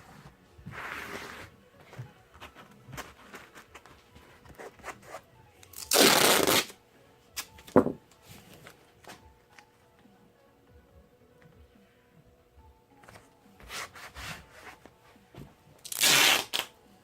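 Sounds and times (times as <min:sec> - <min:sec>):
tape ripping off a roll: 0:05.6 - 0:06.8, 0:15.8 - 0:16.7.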